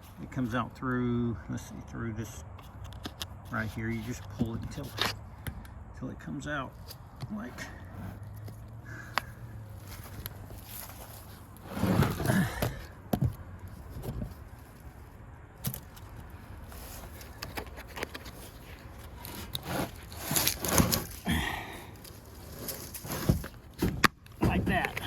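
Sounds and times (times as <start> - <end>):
strap scraping and clicking: 2.5 - 5.7, 15.6 - 21.3, 21.9 - 25.0.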